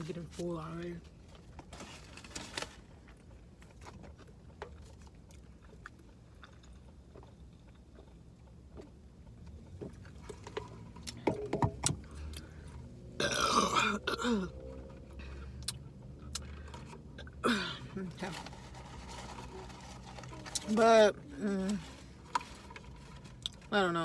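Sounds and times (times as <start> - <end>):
loud burp: 13.2 - 14.5.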